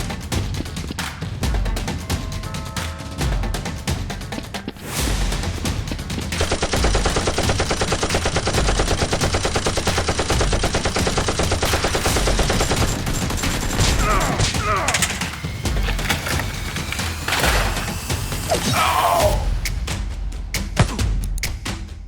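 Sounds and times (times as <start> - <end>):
rapid automatic gunfire: 6.2 - 17.9.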